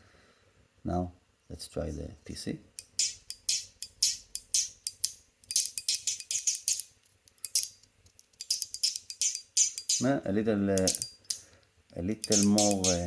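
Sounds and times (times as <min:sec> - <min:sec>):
fidget toy clicking: 0:02.8 - 0:07.7, 0:08.4 - 0:10.1, 0:10.8 - 0:11.4, 0:12.2 - 0:13.0.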